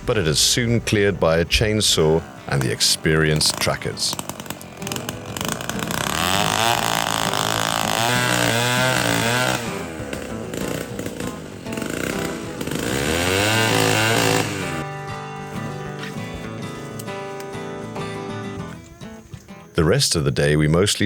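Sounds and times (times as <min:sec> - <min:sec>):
chainsaw revving through timber: 0:02.2 - 0:17.8.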